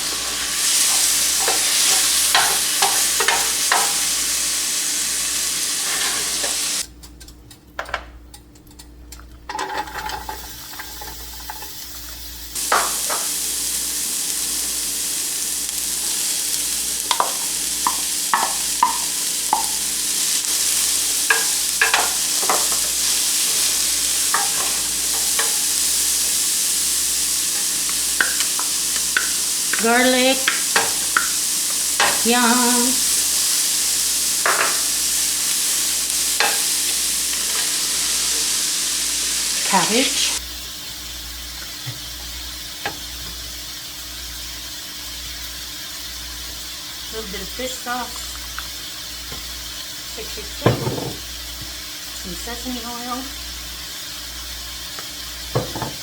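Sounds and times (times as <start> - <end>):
food sizzling in a frying pan: 0.0 - 6.9, 9.5 - 56.0.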